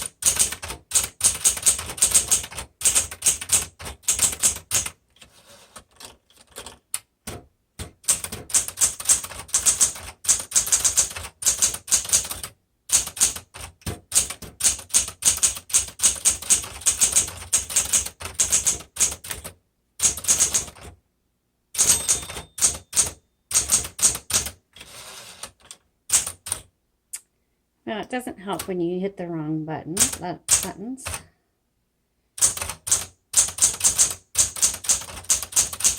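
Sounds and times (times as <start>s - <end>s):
typewriter keys striking: 6.0s - 20.9s, 21.8s - 26.6s, 32.4s - 35.9s.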